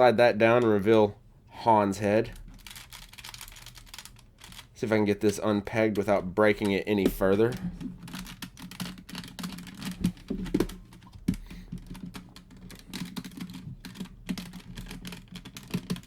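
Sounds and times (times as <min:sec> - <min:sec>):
plastic toy parts clicking: 0:06.6 - 0:16.0.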